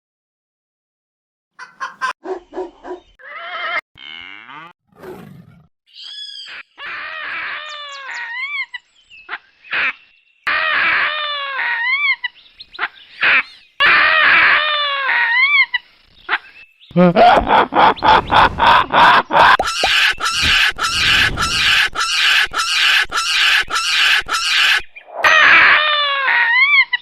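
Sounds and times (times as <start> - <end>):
baboons screaming and barking: 6.1 - 8.8, 9.7 - 16.5, 17.8 - 27.0
baboon cries rising and falling: 10.5 - 12.2, 19.4 - 27.0.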